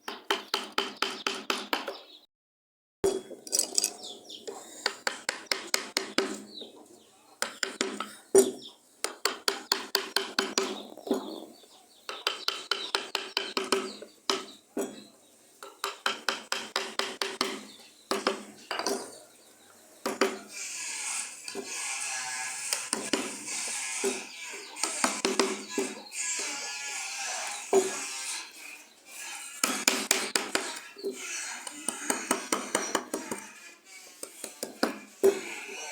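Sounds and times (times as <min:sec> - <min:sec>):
chisel tapping wood: 0:00.1 - 0:02.0, 0:04.8 - 0:06.4, 0:07.4 - 0:08.1, 0:09.0 - 0:10.8, 0:12.1 - 0:14.9, 0:15.6 - 0:19.0, 0:22.7 - 0:23.4, 0:24.8 - 0:26.0, 0:29.6 - 0:30.8.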